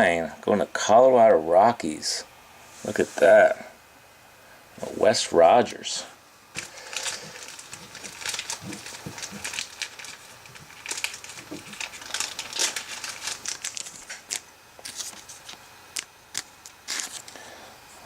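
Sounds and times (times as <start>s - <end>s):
card packaging crinkling: 6.5s - 17.4s.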